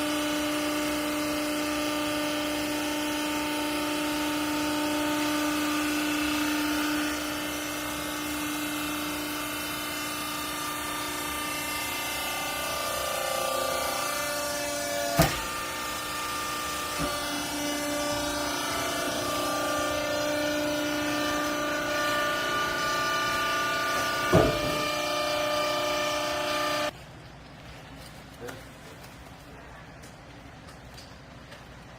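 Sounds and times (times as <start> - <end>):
hydraulic power unit whining: 0.0 - 27.0
sharp knocks: 24.2 - 25.0.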